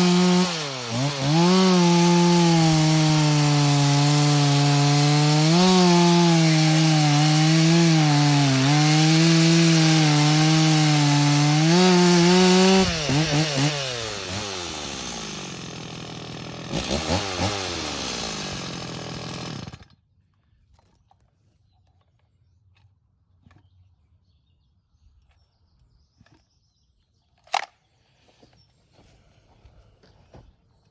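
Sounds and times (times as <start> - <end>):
chainsaw cutting wood: 0.0 - 20.0.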